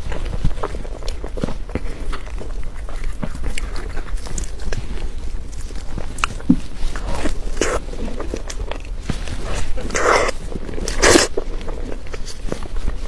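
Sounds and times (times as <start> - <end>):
low steady hum: 0.0 - 13.0
person chewing cake: 0.0 - 13.0.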